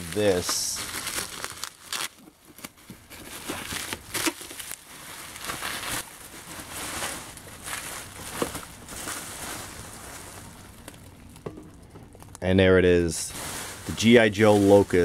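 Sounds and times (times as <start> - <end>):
cardboard box rustling and crinkling: 0.1 - 11.0.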